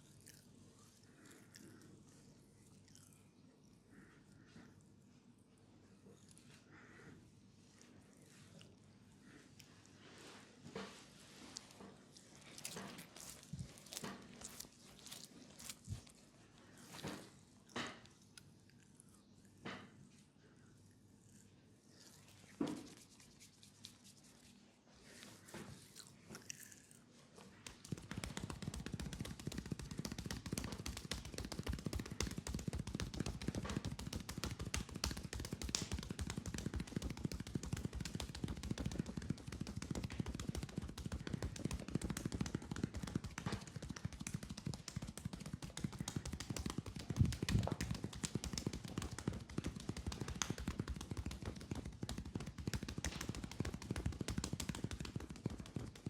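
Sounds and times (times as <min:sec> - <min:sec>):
hands slapping on skin: 0:27.5 - 0:56.0.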